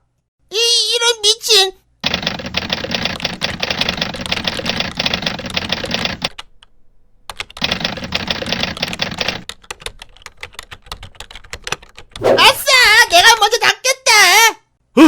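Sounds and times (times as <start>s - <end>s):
keyboard keys clattering: 2.2s - 12.2s.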